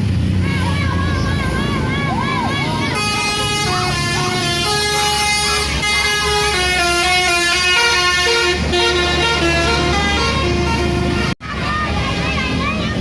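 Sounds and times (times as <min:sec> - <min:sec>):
bus engine low rumble: 0:00.0 - 0:13.0
bus horn playing a tune: 0:01.2 - 0:11.4.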